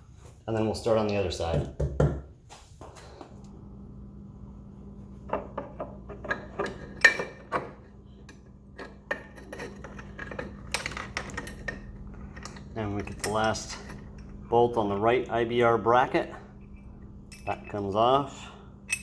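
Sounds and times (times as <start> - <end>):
steady low hum: 2.5 - 19.0
metal hand tools clinking: 17.3 - 17.8.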